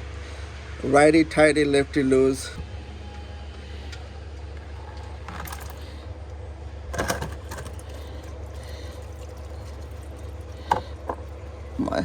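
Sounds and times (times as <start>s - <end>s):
light metal clinks and rattle: 4.7s - 6.0s, 6.9s - 12.0s.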